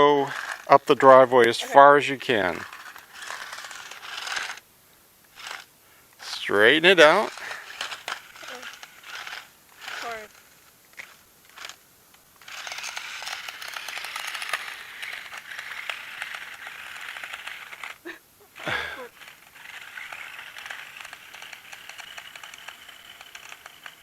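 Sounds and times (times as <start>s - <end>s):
toy car electric motor whirring: 0.0s - 4.7s, 5.3s - 11.8s, 12.4s - 24.0s
rattling tyre noise: 5.3s - 11.8s, 12.4s - 24.0s.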